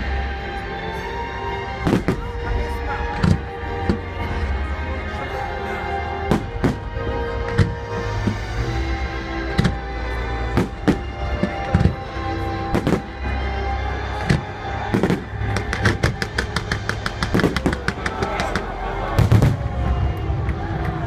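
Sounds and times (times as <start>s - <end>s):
music: 0.0s - 21.0s
fireworks bursting: 14.4s - 20.1s
fireworks crackling: 14.8s - 20.4s.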